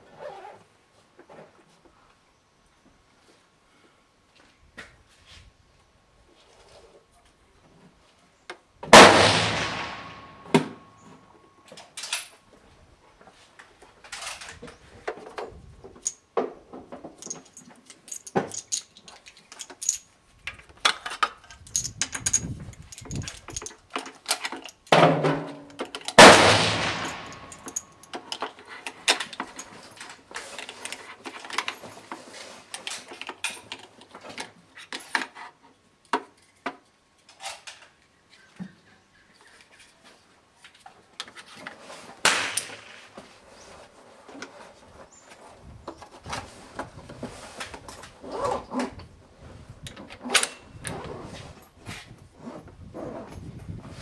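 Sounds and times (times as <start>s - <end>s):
rifle shots: 8.9s - 10.8s, 26.2s - 27.7s.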